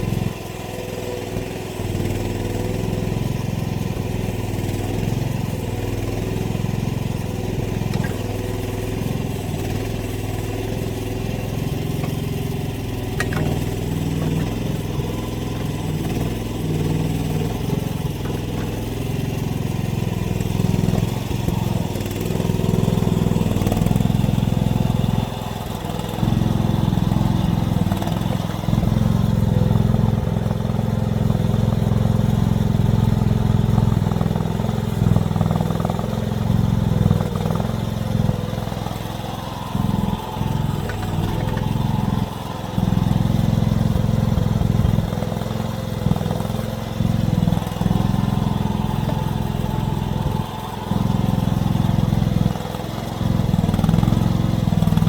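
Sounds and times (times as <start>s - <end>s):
mini excavator engine running: 0.0s - 55.0s.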